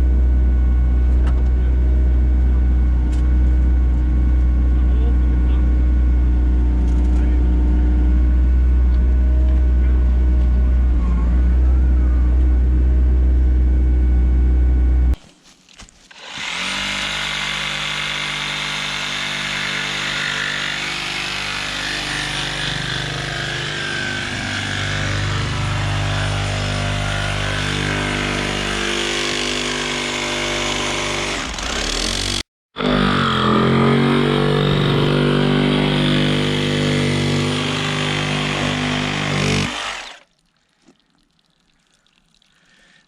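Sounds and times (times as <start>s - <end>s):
machine engine low hum: 0.0s - 15.2s.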